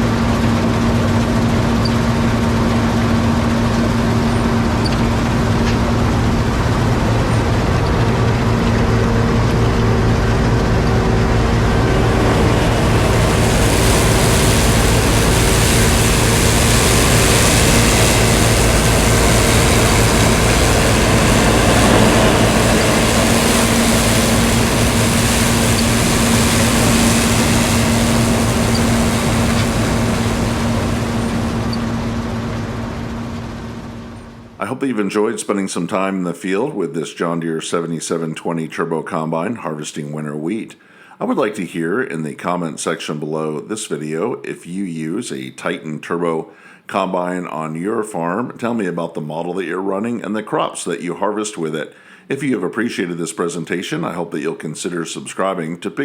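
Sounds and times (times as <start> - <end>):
combine harvester engine drone: 0.0 - 34.6
bright hissing layer: 11.2 - 31.9.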